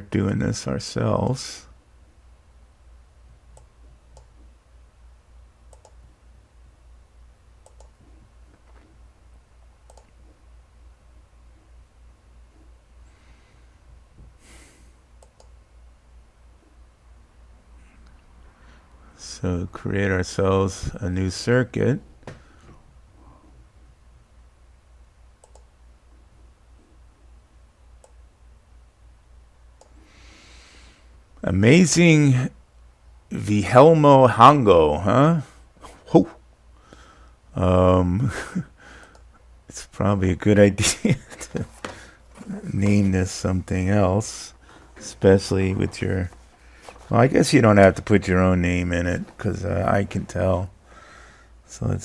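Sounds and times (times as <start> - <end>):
faint low hum: 0.0 - 52.0
computer mouse clicking: 3.5 - 4.4, 5.7 - 6.0, 7.6 - 8.0, 9.9 - 10.2, 15.2 - 15.6, 25.4 - 25.7.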